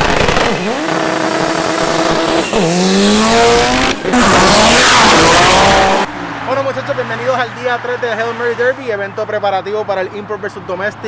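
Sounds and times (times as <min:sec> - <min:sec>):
racing car engine at full throttle: 0:00.0 - 0:08.8.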